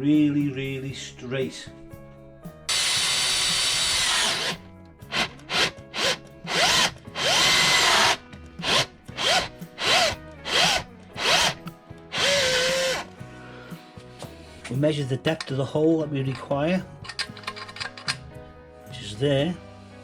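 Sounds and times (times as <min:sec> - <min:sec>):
power drill whining: 0:02.7 - 0:13.2.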